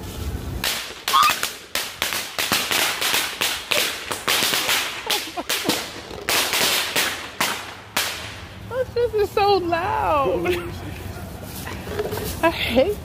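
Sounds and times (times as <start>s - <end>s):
firecrackers banging: 0.0s - 9.8s.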